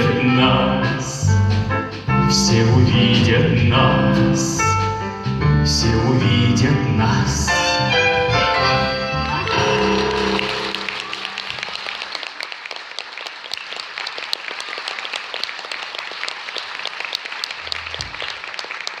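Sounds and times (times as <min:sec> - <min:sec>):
audience applauding: 0:09.5 - 0:19.0.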